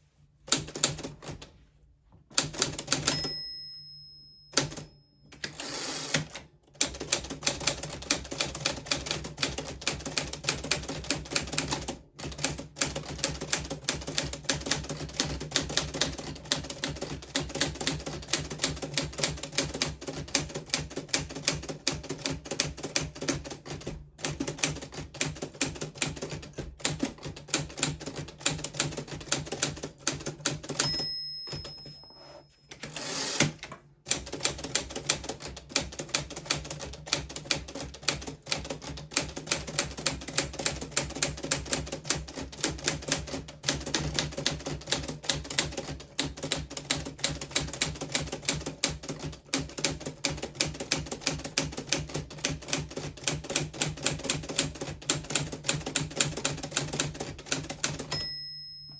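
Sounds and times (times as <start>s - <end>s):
manual typewriter typing: 2.3s - 3.6s, 4.5s - 31.9s, 32.7s - 58.3s
typewriter bell ring: 2.8s - 6.3s, 30.6s - 33.5s, 57.8s - 58.9s
typewriter carriage return sweep: 5.4s - 6.4s, 32.7s - 33.7s.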